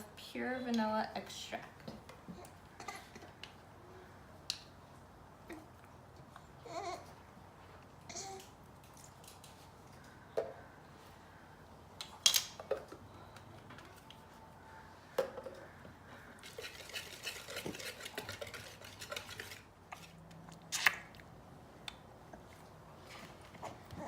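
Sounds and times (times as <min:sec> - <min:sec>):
utensils clinking against bowl: 0:16.4 - 0:20.1
batter being whisked: 0:16.4 - 0:20.2.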